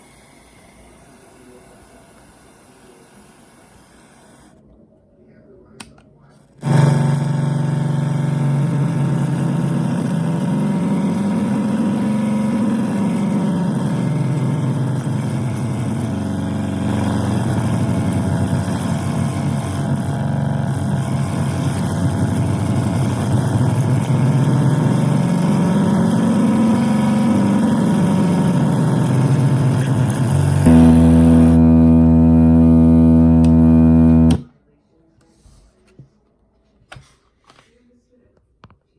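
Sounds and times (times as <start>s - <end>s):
radio speaker buzzing drone: 6.6s - 34.5s.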